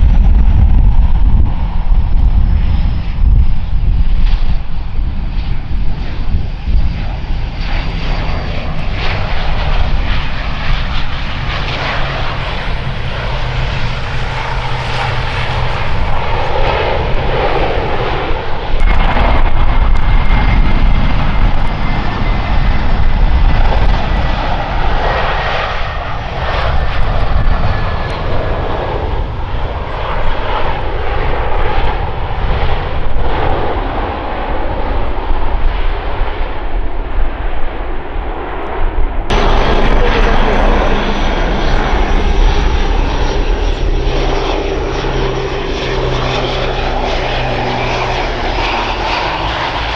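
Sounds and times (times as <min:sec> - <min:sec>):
airliner engines rumbling: 0:00.0 - 0:49.9
thin whine gliding down: 0:39.3 - 0:49.9.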